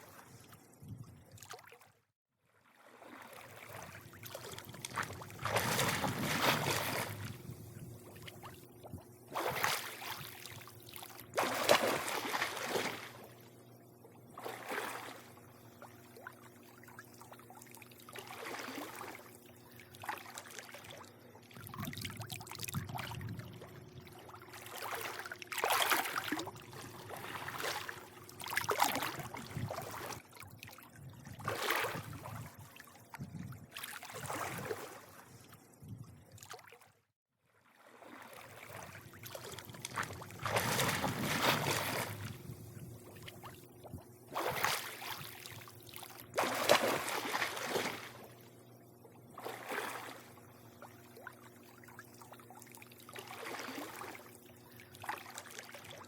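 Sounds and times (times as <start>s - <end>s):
pool water lapping: 0.0s - 56.0s
low hum: 21.0s - 25.5s.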